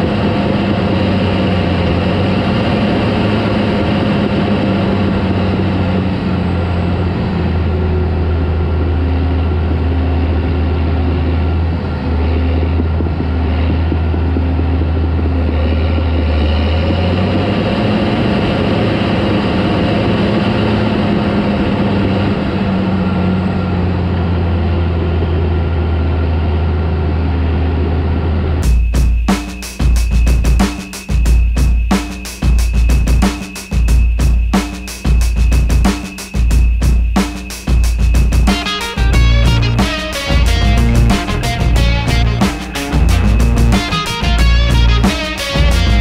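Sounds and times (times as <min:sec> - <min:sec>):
diesel engine running under load: 0:00.0 - 0:28.6, 0:38.7 - 0:46.0
track and machinery noise: 0:00.0 - 0:28.7, 0:37.0 - 0:46.0.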